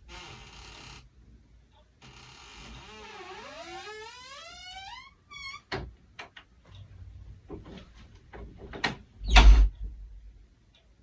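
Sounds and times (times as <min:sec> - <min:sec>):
door creaking open: 0:00.0 - 0:01.1, 0:02.0 - 0:05.9, 0:08.8 - 0:09.8.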